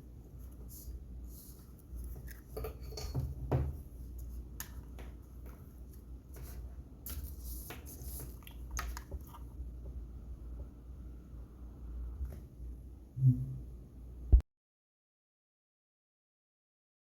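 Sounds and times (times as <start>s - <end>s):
steady low hum: 0.0s - 14.4s
knock: 3.2s - 3.8s.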